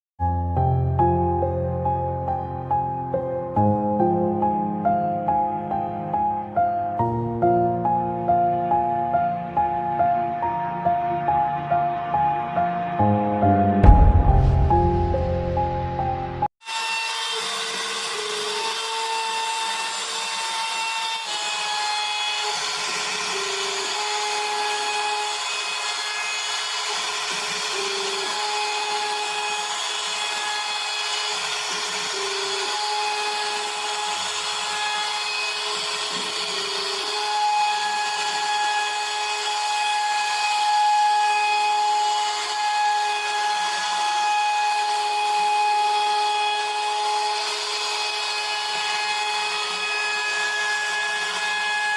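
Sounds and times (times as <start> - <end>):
router spindle high whine: 16.6 - 51.9.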